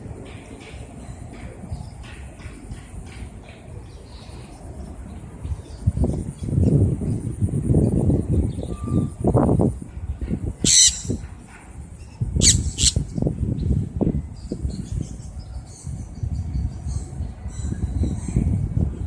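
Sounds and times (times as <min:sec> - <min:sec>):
parrots screeching: 0:10.6 - 0:11.2, 0:12.4 - 0:13.0.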